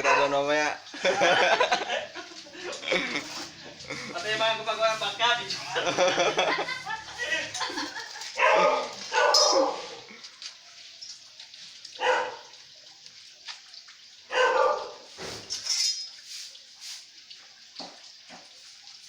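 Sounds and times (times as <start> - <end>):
dog barking: 0.0 - 0.4, 8.3 - 10.1, 12.0 - 12.6, 14.3 - 15.1.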